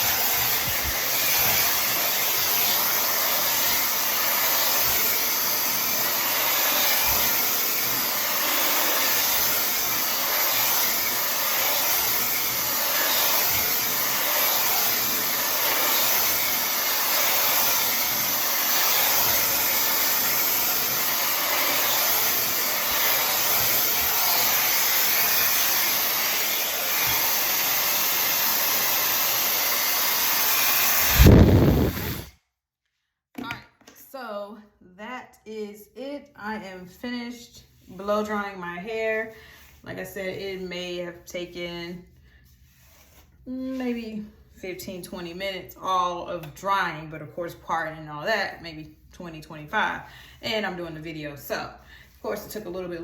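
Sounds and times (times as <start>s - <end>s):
hair dryer running: 0.0s - 32.3s.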